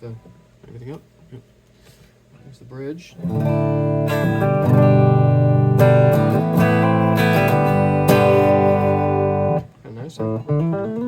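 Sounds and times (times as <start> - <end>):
electric guitar strummed chords: 3.2 - 11.0.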